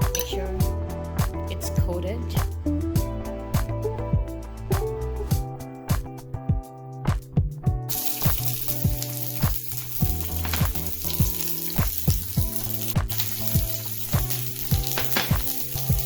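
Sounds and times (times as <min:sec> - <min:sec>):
vegetables sizzling in oil: 0:07.9 - 0:16.0.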